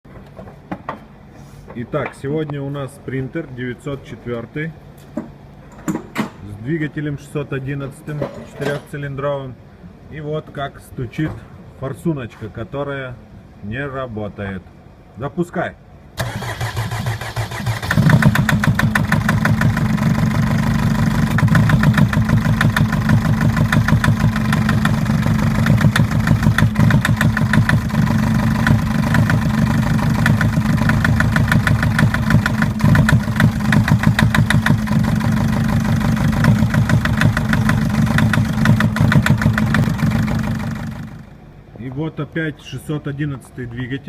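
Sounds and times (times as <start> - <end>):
diesel engine cranking and idling: 16.2 - 41.6
rhythmic engine knock: 17.9 - 41.3.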